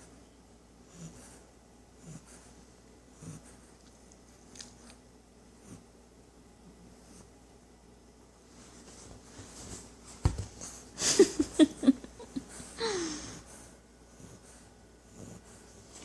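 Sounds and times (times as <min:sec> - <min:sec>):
puppy snoring: 0:00.8 - 0:02.5, 0:03.1 - 0:03.8, 0:13.3 - 0:15.7
wheezing snorts: 0:03.1 - 0:03.7.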